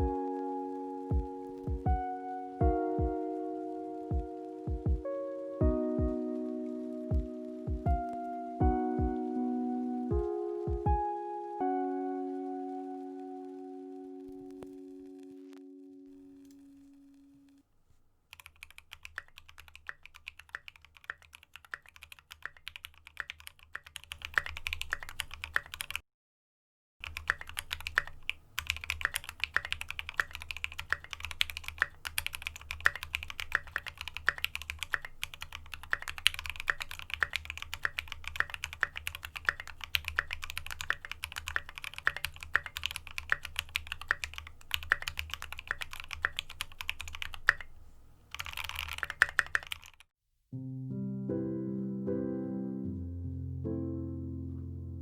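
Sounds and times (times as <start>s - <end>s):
mechanical keyboard typing: 18.3s - 26.0s, 27.0s - 50.1s.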